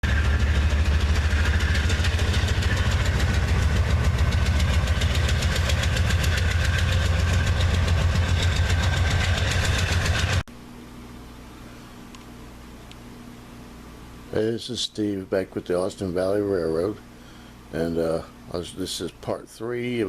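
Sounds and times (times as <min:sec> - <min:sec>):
engine knocking and humming: 0:00.0 - 0:10.4.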